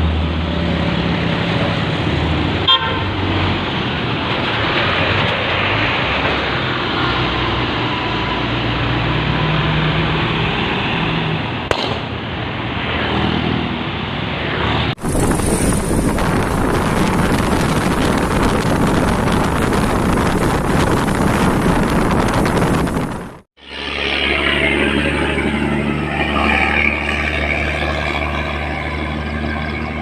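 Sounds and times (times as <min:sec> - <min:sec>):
truck diesel engine under load: 0:00.0 - 0:11.7, 0:14.9 - 0:30.0
harsh engine with rapid crackle: 0:14.5 - 0:30.0.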